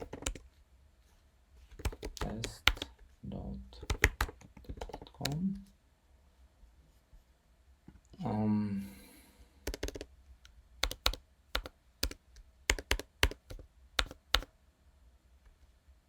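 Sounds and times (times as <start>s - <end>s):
typing on computer keyboard: 0.0s - 0.4s, 1.8s - 2.9s, 3.8s - 5.4s, 9.6s - 10.1s, 10.8s - 14.5s.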